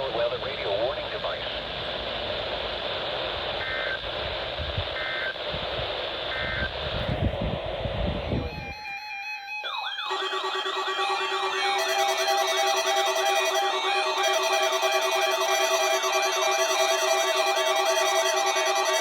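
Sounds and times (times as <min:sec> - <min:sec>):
radio receiver hiss: 0:00.0 - 0:08.9
warbling siren-like electronic tones: 0:08.2 - 0:19.0.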